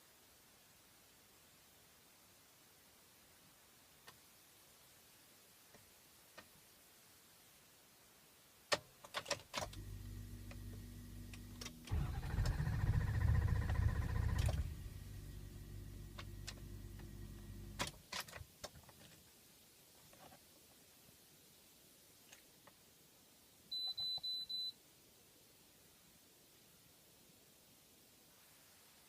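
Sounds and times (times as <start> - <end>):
steady hum: 9.7 - 12.0, 12.7 - 17.8
diesel engine cranking: 9.7 - 17.9.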